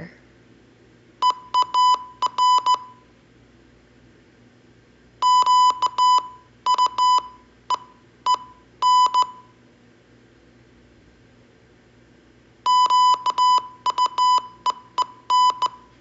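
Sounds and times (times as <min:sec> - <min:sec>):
morse code beeps: 0:01.2 - 0:03.0, 0:05.2 - 0:09.5, 0:12.7 - 0:15.9.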